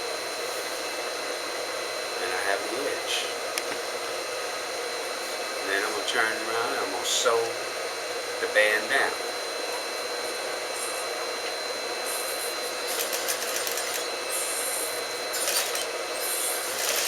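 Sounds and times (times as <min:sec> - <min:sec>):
sewing machine stitching: 0:12.8 - 0:14.1, 0:15.3 - 0:17.0.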